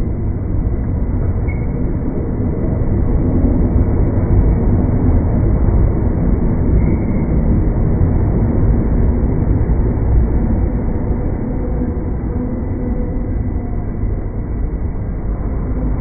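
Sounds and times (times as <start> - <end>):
electric train rumbling: 0.0 - 16.0.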